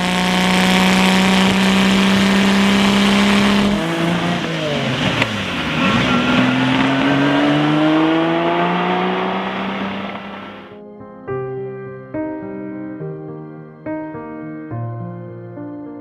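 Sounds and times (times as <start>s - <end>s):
car engine revving: 0.0s - 10.8s.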